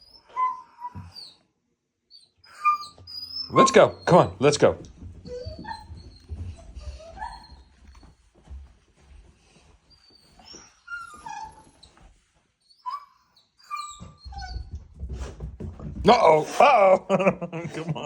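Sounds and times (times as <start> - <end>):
dog whimpering: 0.0 - 1.4, 2.1 - 4.4, 5.2 - 8.1, 10.0 - 12.0, 12.7 - 14.8.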